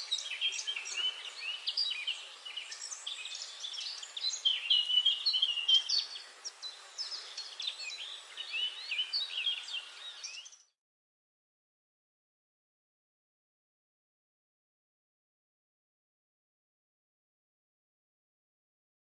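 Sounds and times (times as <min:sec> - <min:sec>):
birds chirping and whistling: 0:00.0 - 0:10.7.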